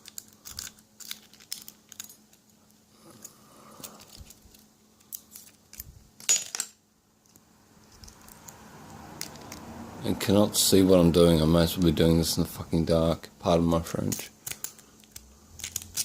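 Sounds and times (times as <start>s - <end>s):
lock pick clicking and scraping: 14.4s - 16.0s.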